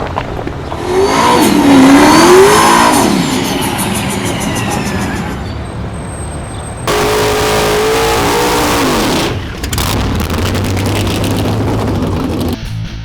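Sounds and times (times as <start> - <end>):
race car engine revving: 0.8 - 5.0, 6.9 - 12.6.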